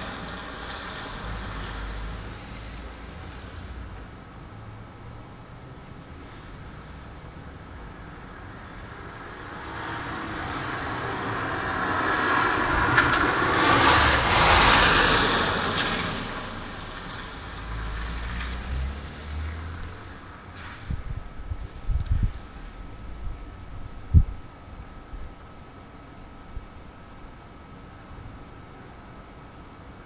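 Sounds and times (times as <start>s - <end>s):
car driving past: 8.0s - 21.0s
faint low rumble: 16.9s - 27.5s.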